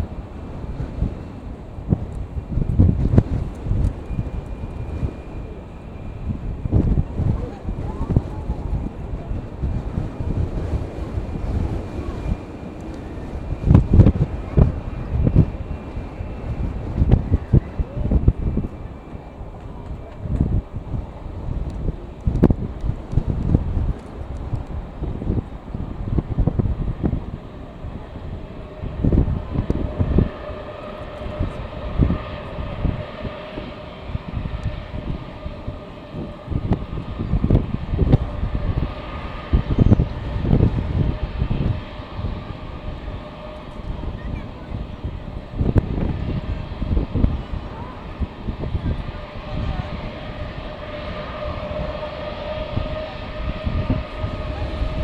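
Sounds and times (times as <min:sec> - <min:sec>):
jet engines whining: 0:00.0 - 0:55.0
wind buffeting microphone: 0:00.0 - 0:55.0.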